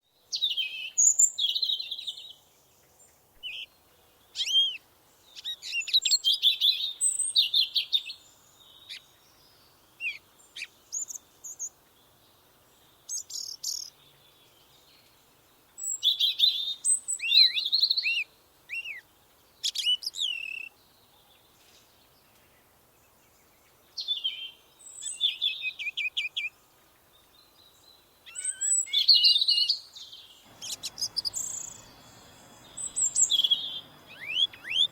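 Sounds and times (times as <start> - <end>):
songbird singing: 0.0 - 34.9.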